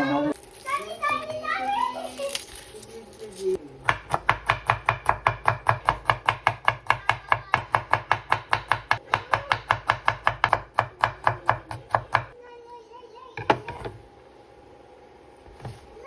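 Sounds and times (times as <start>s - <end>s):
knife chopping on cutting board: 3.8s - 12.3s.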